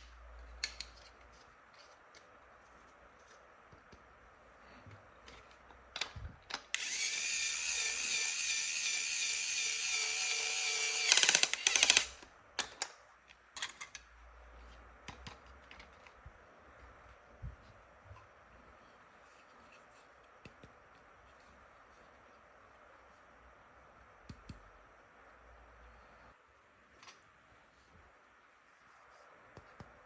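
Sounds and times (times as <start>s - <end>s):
toy drill whining: 6.7s - 12.2s.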